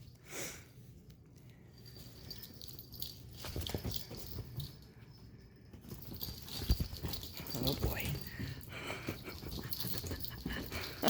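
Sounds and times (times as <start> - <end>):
monkeys scuffling: 5.9 - 11.0.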